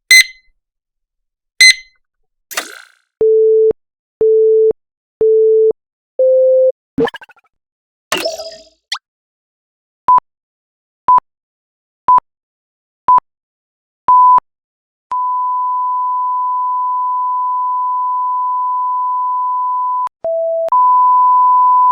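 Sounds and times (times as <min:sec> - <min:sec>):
censor bleep tone: 0:00.1 - 0:00.4, 0:01.6 - 0:01.9.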